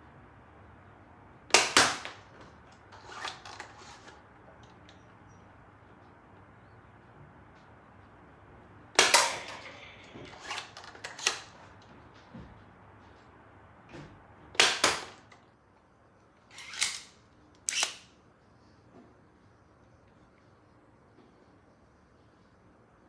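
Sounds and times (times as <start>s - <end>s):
dart blaster firing snaps: 1.5s - 2.2s, 9.0s - 11.5s, 14.6s - 15.4s.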